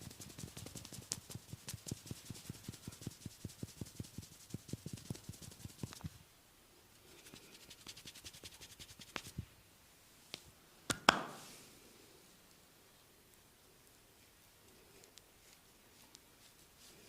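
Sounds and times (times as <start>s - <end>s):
rapid light taps: 0.0s - 6.2s
loud knuckle cracks: 10.9s - 11.4s.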